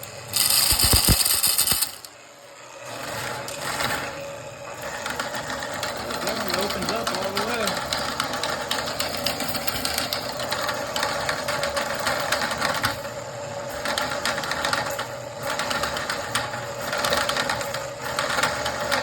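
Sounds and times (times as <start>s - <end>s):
drain machine motor hum: 0.0s - 9.1s
rattling chains: 0.3s - 2.1s.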